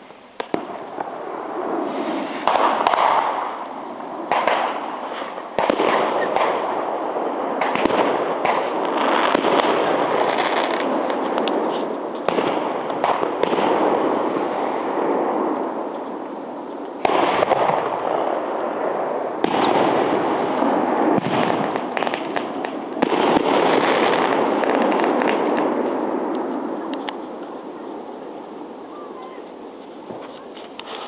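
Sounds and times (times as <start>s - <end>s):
fireworks crackle and rumble: 0.0s - 31.0s
loud firework bangs: 0.0s - 31.0s
sharp firework cracks: 0.0s - 31.0s.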